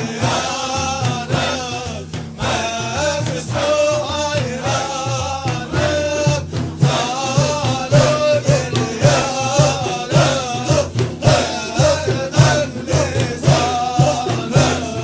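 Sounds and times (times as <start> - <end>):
voices chanting: 0.0 - 15.0.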